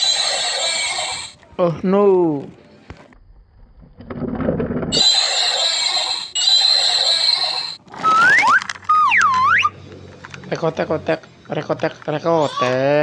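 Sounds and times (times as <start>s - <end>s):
harsh hissing screeches: 0.0s - 1.4s, 5.0s - 7.8s
gliding whistle: 5.0s - 9.8s.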